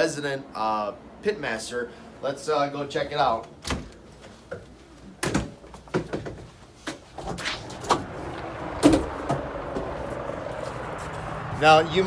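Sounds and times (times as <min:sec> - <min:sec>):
sharp knocks and clunks: 0:05.2 - 0:10.3.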